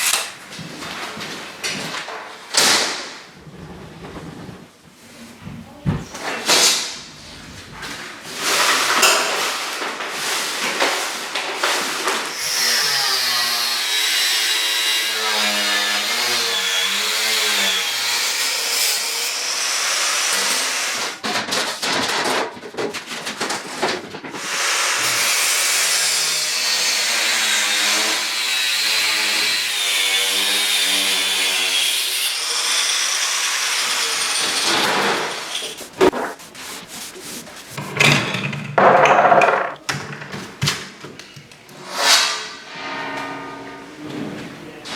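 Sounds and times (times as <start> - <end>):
knocks and handling: 35.6 - 41.4.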